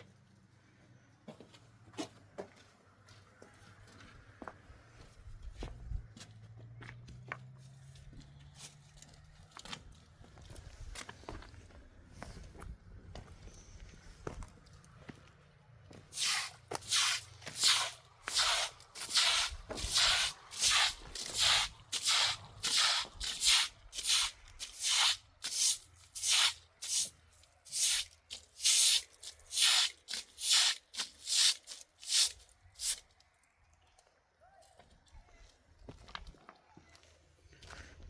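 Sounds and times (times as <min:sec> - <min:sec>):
brushing strokes swishing: 0:16.1 - 0:33.0.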